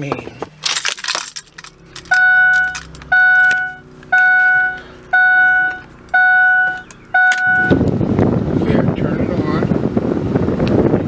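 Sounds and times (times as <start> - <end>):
dashboard warning chime dinging: 2.0 - 7.9.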